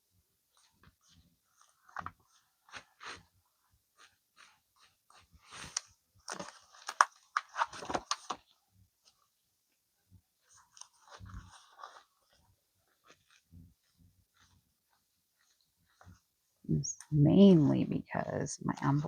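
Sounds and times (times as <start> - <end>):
paper rustling and crinkling: 0.6 - 9.3, 10.4 - 16.2.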